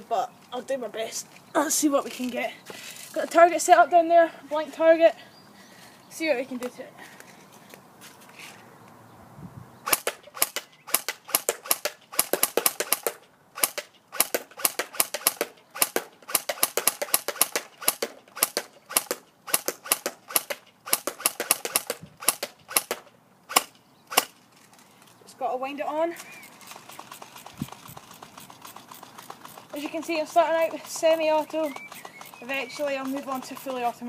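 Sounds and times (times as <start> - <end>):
airsoft gun shots snapping: 9.9 - 24.4.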